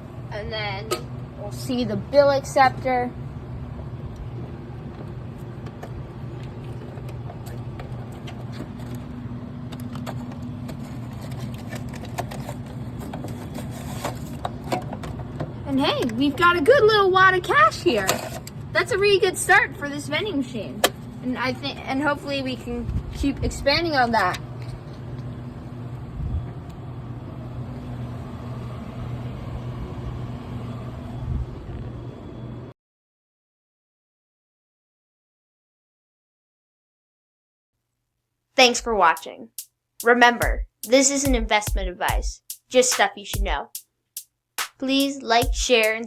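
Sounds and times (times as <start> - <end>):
low machine hum: 0.0 - 32.7
bill acceptor clicks and rattles: 9.7 - 16.2, 17.8 - 18.6.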